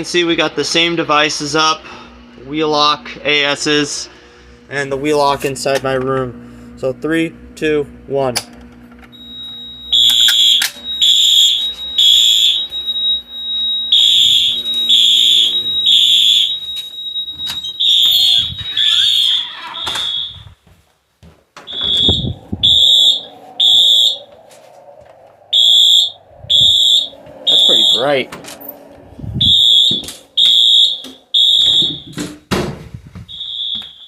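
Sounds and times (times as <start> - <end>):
high electronic horn blasts: 9.2 - 20.5, 21.7 - 24.2, 25.6 - 28.2, 29.4 - 32.2
thin steady high tone: 9.2 - 20.5, 21.7 - 32.2.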